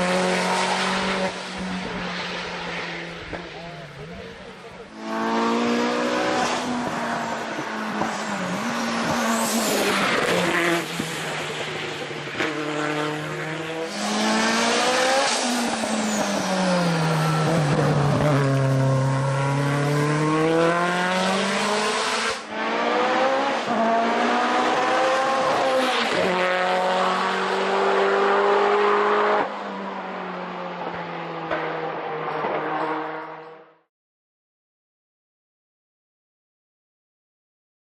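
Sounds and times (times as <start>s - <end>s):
rally car engine revving: 0.0s - 29.5s.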